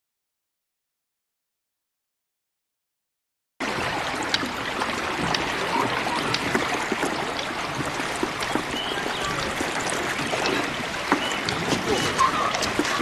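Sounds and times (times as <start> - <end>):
water rushing: 3.6 - 13.0
small splashes and clicks: 3.7 - 13.0.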